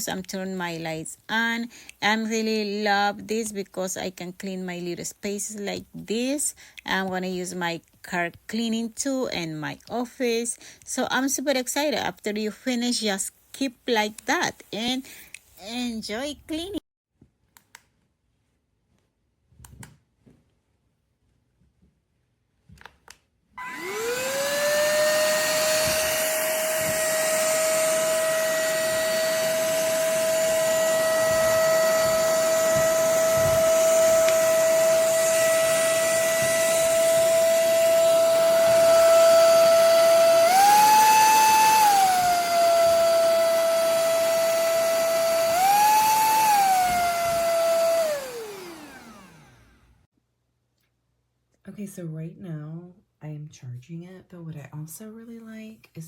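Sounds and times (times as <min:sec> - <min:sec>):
handheld vacuum motor whine: 0:23.6 - 0:50.1.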